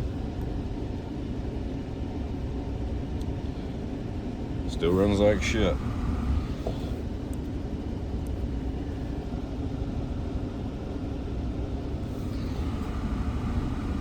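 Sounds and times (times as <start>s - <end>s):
car engine idling rough: 4.7s - 7.3s, 11.8s - 14.0s.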